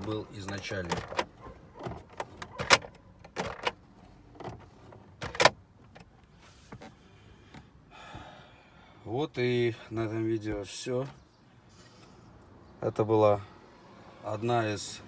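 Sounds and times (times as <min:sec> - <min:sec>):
plastic trim clicks and knocks: 0:00.0 - 0:03.8.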